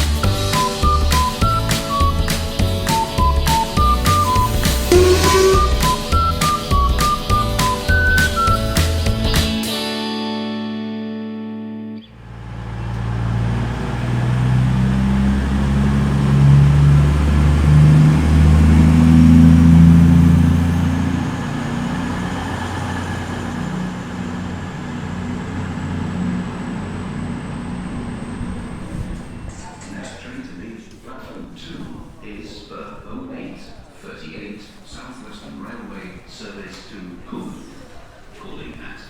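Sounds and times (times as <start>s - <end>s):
train low hum: 2.6s - 8.8s, 12.2s - 30.2s
faint high whine: 4.1s - 6.6s.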